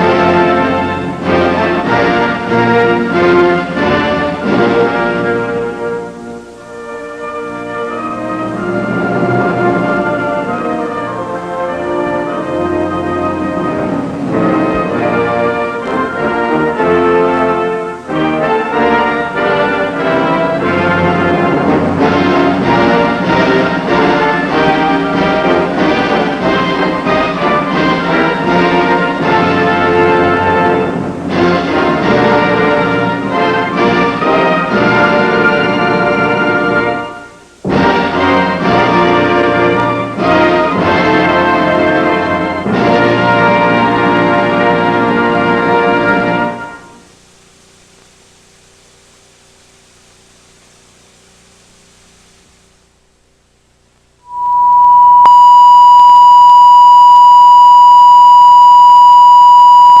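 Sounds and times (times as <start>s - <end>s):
orchestral music with brass: 0.0s - 46.9s
loud distorted test tone: 54.2s - 60.0s.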